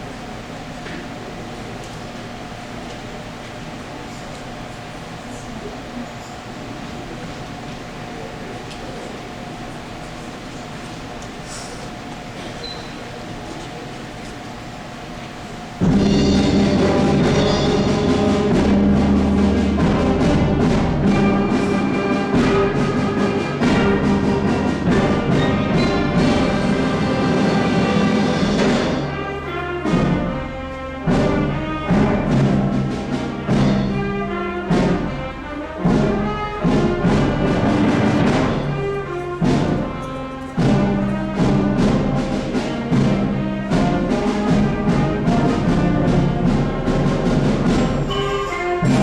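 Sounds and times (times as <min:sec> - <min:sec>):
orchestral music with brass and timpani: 0:15.8 - 0:49.0.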